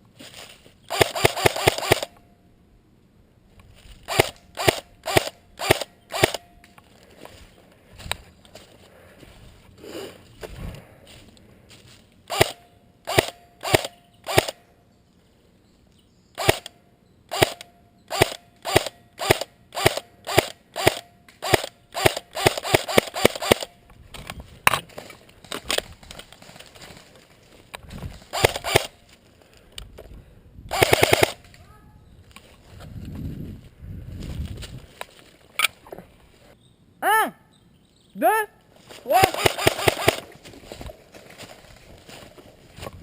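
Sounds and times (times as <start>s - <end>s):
airsoft rifle firing: 0.9s - 2.2s, 4.1s - 6.5s, 12.3s - 14.6s, 16.4s - 16.7s, 17.3s - 23.7s, 28.3s - 29.0s, 30.7s - 31.4s, 39.1s - 40.3s.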